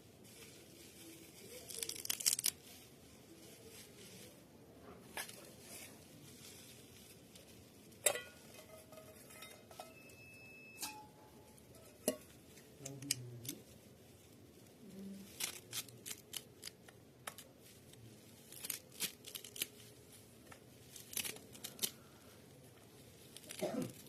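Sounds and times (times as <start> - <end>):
kitchenware clinking and knocking: 8.0 - 12.3.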